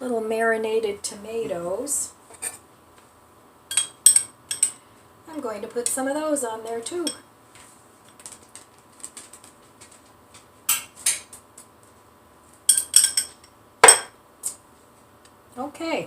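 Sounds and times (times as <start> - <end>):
cutlery clinking against dishes: 3.7 - 4.8, 12.7 - 14.1.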